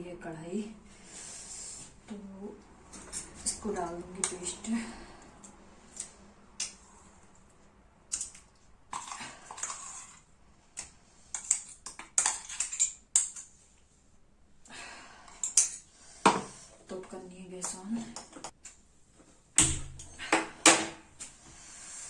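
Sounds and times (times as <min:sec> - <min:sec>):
kitchen utensils clinking and scraping: 0:08.9 - 0:10.3, 0:11.3 - 0:13.6.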